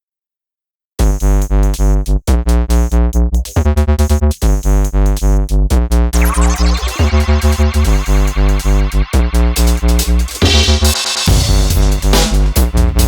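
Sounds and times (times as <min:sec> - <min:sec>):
heavy drum-machine beat: 0:01.0 - 0:13.0
electronic music with synthesizer chords: 0:06.2 - 0:13.0.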